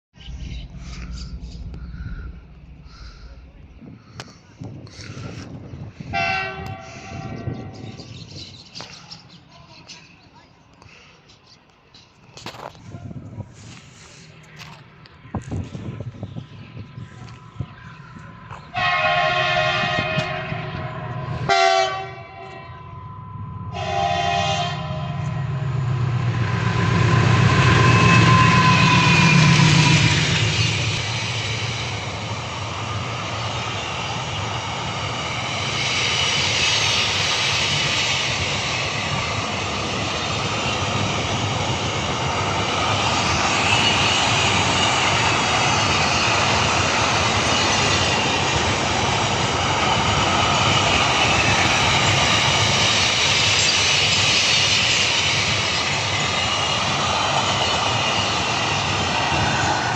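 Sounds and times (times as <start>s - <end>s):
train rumbling past: 0.2s - 59.9s
train horn blasts: 6.1s - 8.0s, 18.7s - 25.5s, 27.8s - 29.8s.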